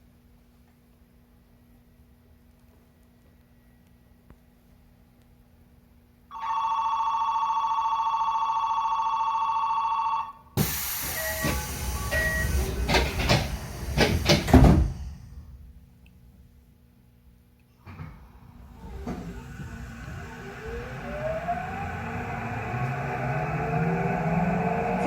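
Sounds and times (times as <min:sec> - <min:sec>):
station departure bell ringing: 0:06.3 - 0:10.4
train doors clattering and hissing: 0:10.6 - 0:15.7, 0:17.9 - 0:21.3.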